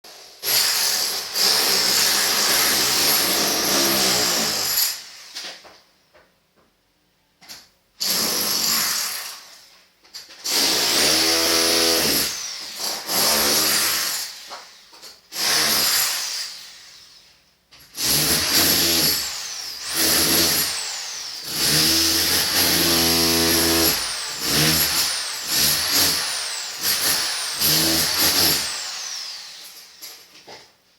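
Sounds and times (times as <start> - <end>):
power tool motor whining: 18.2 - 30.1.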